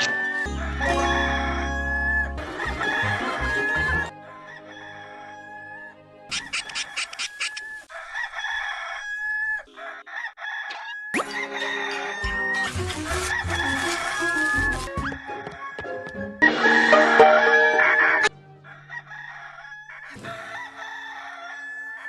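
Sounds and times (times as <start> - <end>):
music: 0.0 - 6.8, 11.2 - 19.6
rooster crowing: 0.0 - 22.0.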